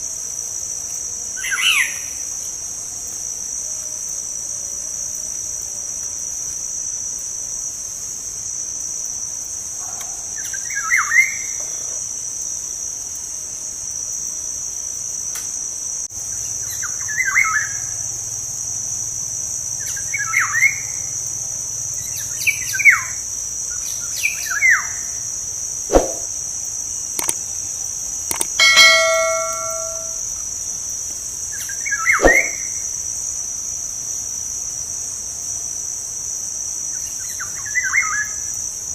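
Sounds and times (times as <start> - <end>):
insects droning: 0.0 - 38.9
brief ringing note: 28.6 - 30.2.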